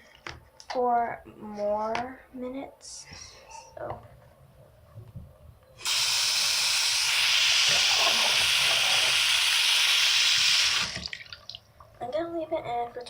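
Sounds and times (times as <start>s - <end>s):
tap water running into container: 5.8s - 11.6s.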